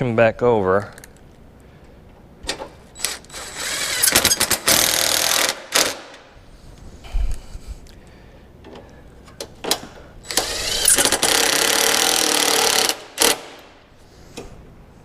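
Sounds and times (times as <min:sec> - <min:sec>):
power tool motor whirring: 0:03.0 - 0:05.5, 0:10.3 - 0:13.4.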